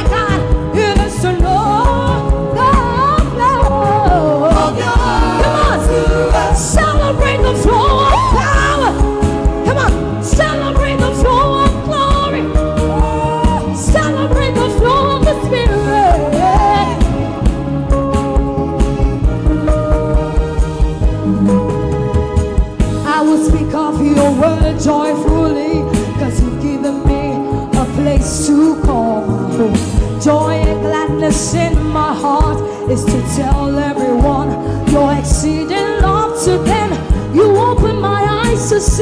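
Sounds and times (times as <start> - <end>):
upbeat gospel song: 0.0 - 39.0
wordless singing: 0.0 - 39.0.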